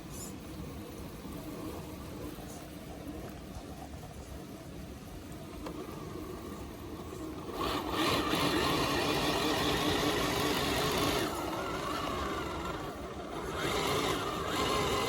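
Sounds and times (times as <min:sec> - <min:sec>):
electric motor and gears whirring: 0:05.3 - 0:15.0.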